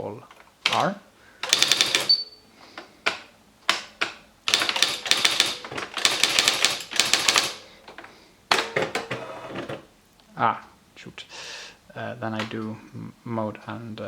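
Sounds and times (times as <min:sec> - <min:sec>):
electric typewriter typing strikes: 0:01.4 - 0:02.3, 0:04.5 - 0:07.6
high beep: 0:02.1 - 0:02.4.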